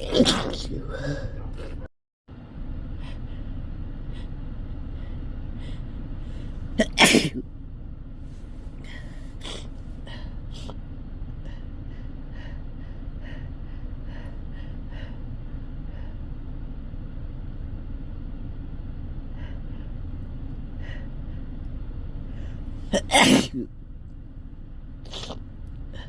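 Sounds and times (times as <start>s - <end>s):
person gasping and sniffing: 0.0s - 1.8s
low rumble: 0.0s - 6.8s.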